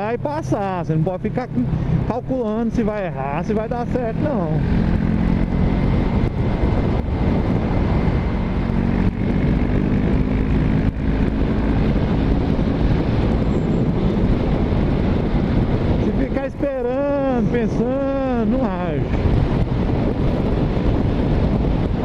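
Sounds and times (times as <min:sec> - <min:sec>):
motorcycle engine running: 0:00.0 - 0:22.0
wind rushing over microphone: 0:00.0 - 0:22.0.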